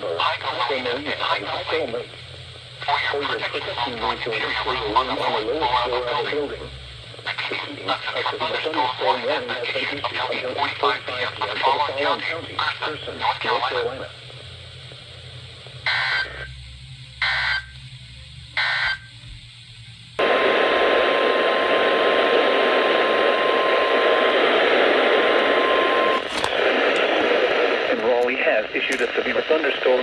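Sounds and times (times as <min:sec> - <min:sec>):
loud radio static: 0:00.0 - 0:16.5, 0:17.2 - 0:17.8, 0:18.6 - 0:19.1, 0:21.4 - 0:30.0
weather radio data tones: 0:00.0 - 0:17.8, 0:18.6 - 0:19.2, 0:20.2 - 0:30.0
steady warning alarm tone: 0:15.8 - 0:17.8, 0:18.6 - 0:19.2.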